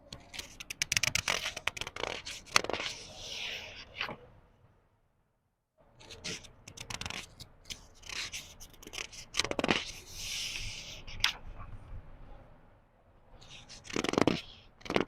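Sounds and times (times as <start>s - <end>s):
book pages rustling: 0.1s - 4.2s, 6.0s - 11.7s, 13.4s - 15.0s
page sliding swish: 0.3s - 4.2s, 6.0s - 11.4s, 13.4s - 15.0s.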